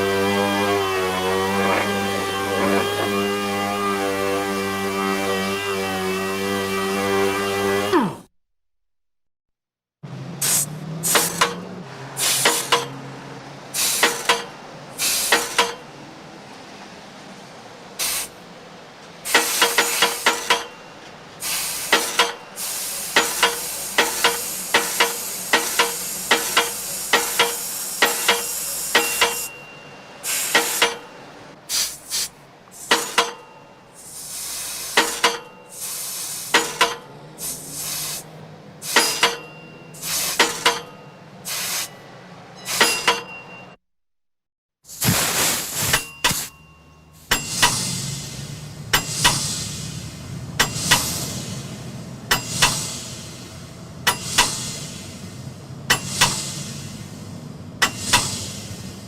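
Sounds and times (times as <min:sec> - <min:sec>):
pneumatic tool air hissing: 0:10.4 - 0:11.4, 0:12.2 - 0:12.8, 0:13.8 - 0:14.4, 0:15.0 - 0:15.7, 0:18.0 - 0:18.4, 0:19.3 - 0:20.5, 0:21.4 - 0:29.5, 0:30.2 - 0:31.0, 0:31.7 - 0:33.2, 0:34.0 - 0:39.4, 0:40.0 - 0:40.8, 0:41.5 - 0:41.9, 0:44.9 - 0:46.5, 0:47.2 - 0:59.0.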